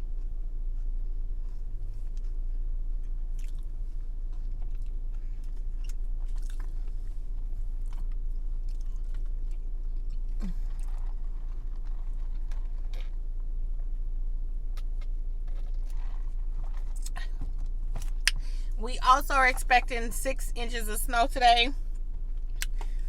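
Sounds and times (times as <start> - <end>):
chewing and biting food: 0.0 - 13.2, 14.7 - 18.5
steady low hum: 0.0 - 23.0.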